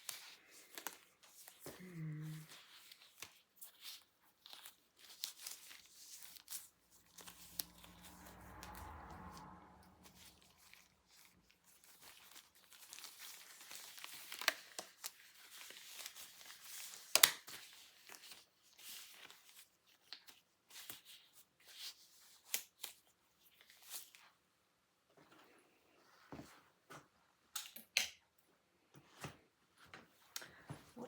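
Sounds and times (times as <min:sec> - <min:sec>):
crinkling and rustling: 0:00.0 - 0:24.4.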